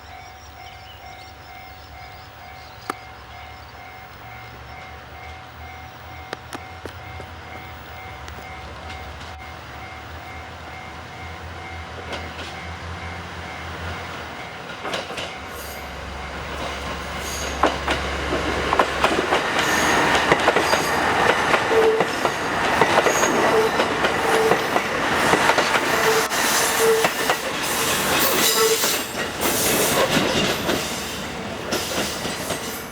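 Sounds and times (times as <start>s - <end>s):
diesel train engine hum: 0.0s - 32.9s
wheels clattering over rail joints: 13.8s - 15.6s, 16.5s - 32.9s.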